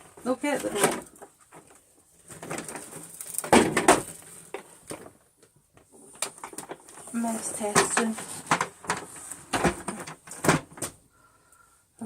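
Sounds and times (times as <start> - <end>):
vacuum cleaners knocking and bumping: 3.4 - 5.1, 6.3 - 11.0.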